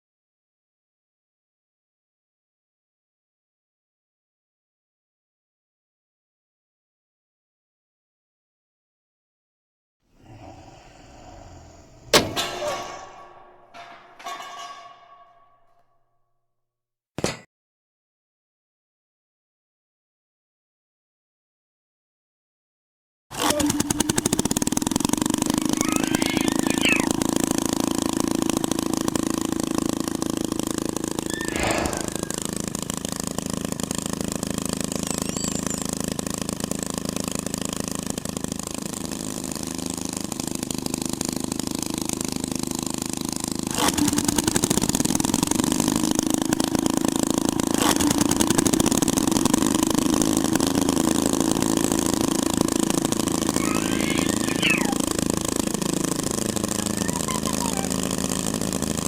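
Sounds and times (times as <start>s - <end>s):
chainsaw engine running: 10.2s - 15.8s, 23.3s - 59.0s.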